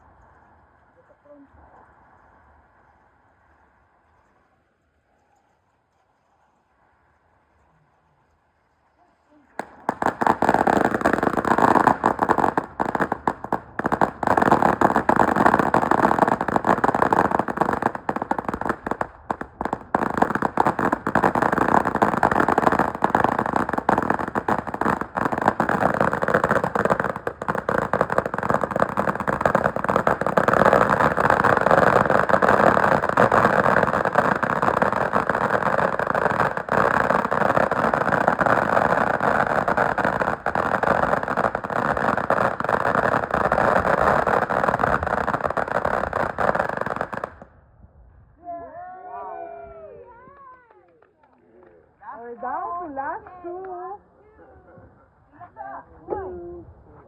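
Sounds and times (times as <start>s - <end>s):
firework crackling pops: 9.3s - 47.5s.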